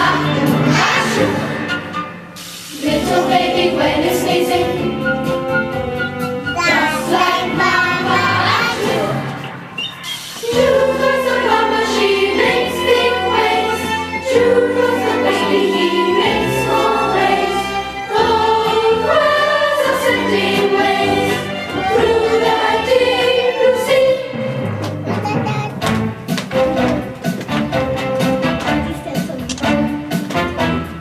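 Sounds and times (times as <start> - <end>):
children singing: 0.0 - 1.7, 2.7 - 5.2, 6.5 - 9.5, 10.4 - 24.6
instrumental accompaniment: 0.0 - 31.0.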